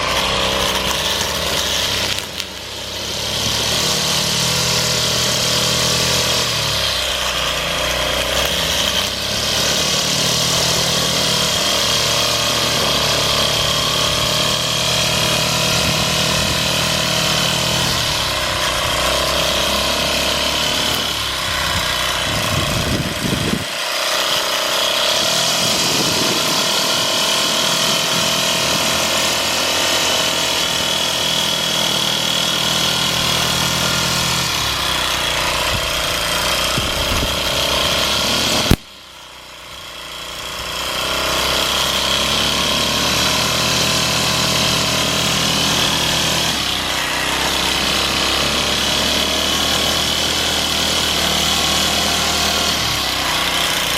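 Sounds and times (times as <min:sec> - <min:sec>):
string trimmer whining: 0:00.0 - 0:53.9
sharp click: 0:38.6 - 0:39.0.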